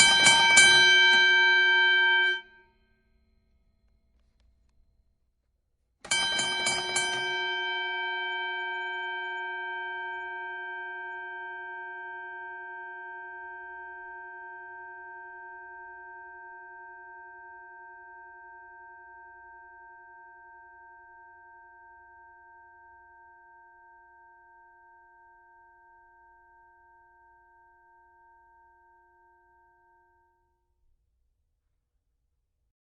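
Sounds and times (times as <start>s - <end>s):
boxing bell ringing: 0.0s - 2.6s, 6.1s - 14.4s.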